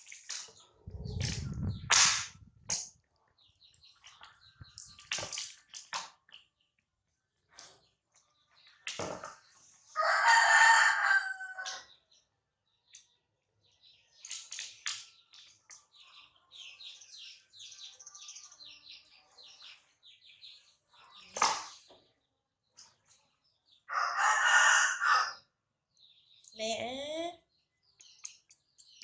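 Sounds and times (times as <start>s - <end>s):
rooster crowing: 10.0s - 11.8s, 23.9s - 25.4s.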